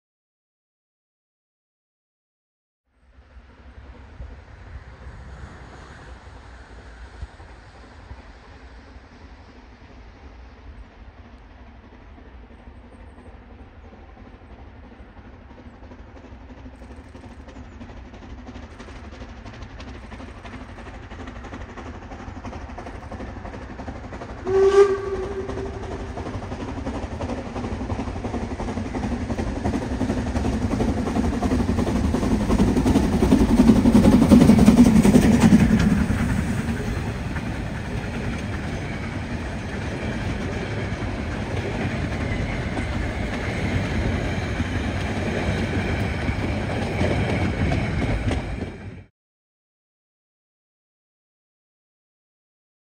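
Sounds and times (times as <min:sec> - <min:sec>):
short horn blast: 0:24.4 - 0:26.0.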